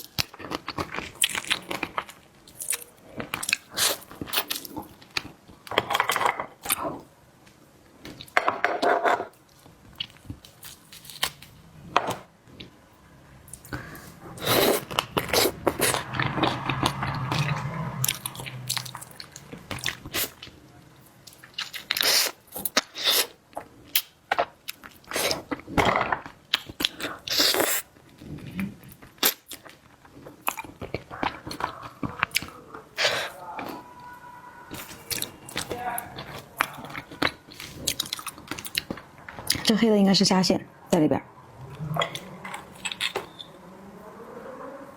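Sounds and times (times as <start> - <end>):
person chewing with crunches: 0.0 - 7.1, 8.1 - 11.5, 13.5 - 20.6, 21.2 - 33.9, 34.7 - 39.7, 41.7 - 43.5.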